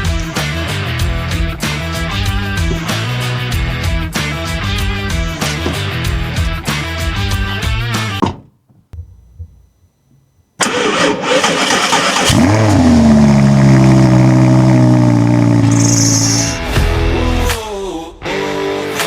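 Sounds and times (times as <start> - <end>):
car engine revving and idling: 10.6 - 16.6
starter motor cranking: 10.6 - 16.6.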